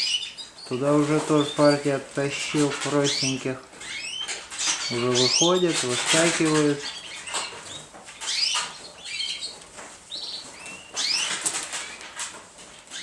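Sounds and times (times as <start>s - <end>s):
young pigeons peeping: 0.0s - 13.0s
wings fluttering: 10.2s - 13.0s.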